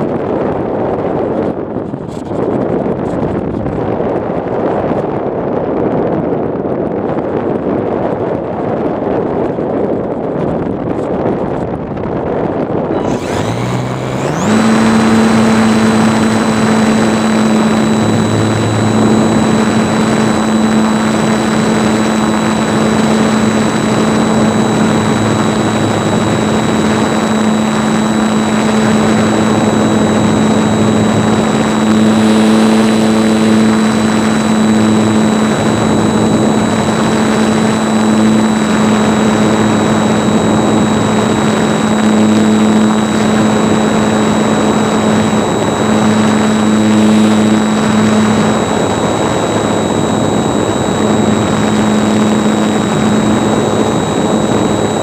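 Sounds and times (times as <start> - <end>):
model airplane motor and propeller: 12.6 - 55.0
rush of noise: 12.9 - 55.0.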